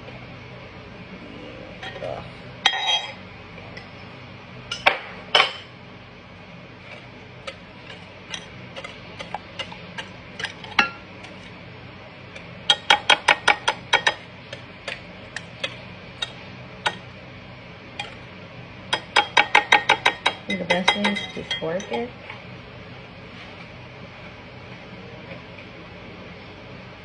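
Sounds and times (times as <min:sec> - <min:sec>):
utensil clicking against bowl: 0:07.4 - 0:11.4, 0:12.4 - 0:17.1.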